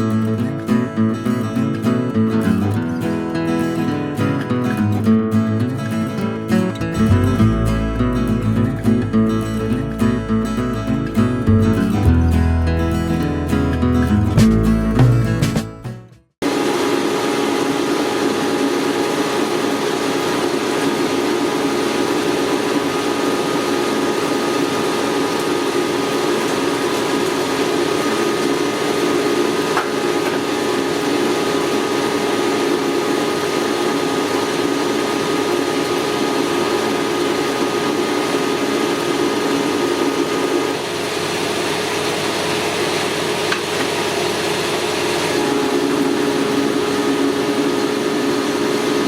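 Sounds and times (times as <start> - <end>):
machine tool running: 43.3 - 49.0.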